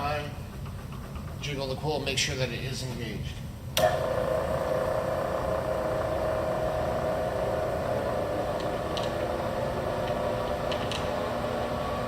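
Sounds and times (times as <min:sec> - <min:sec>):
milling machine running: 0:03.8 - 0:12.0.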